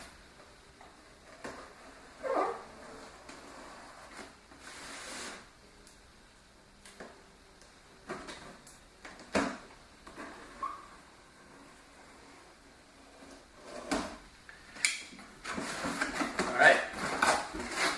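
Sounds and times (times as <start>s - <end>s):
cardboard box rustling and scraping: 15.5s - 17.9s.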